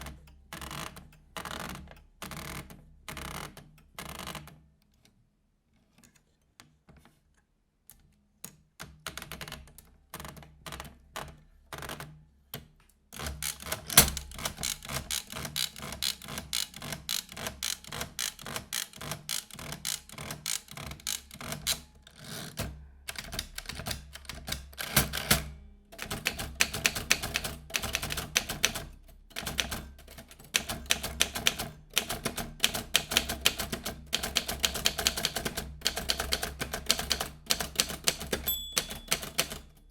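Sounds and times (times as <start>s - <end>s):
manual typewriter typing: 13.2s - 39.9s.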